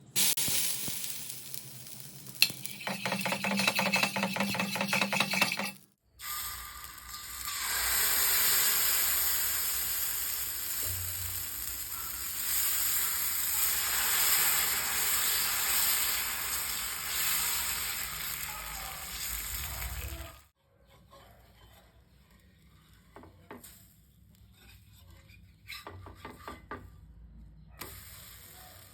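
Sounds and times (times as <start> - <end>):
batter sizzling on a hot griddle: 0.1 - 4.7, 5.4 - 20.4, 27.8 - 28.9.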